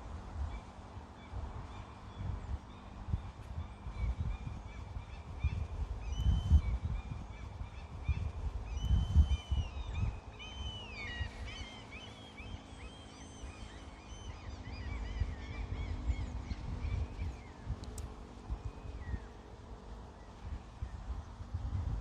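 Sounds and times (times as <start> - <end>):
low gusty rumble: 0.0 - 22.0
birds whistling and chirping: 1.7 - 17.7, 18.6 - 19.3.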